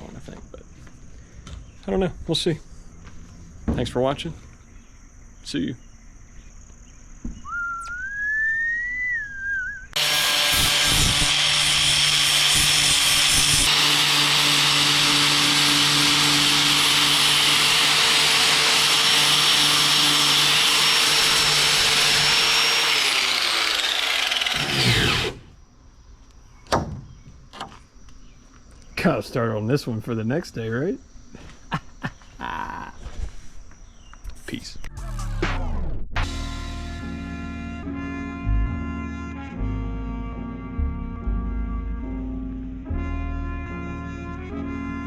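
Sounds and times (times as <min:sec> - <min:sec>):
power tool motor running: 0:10.0 - 0:25.5.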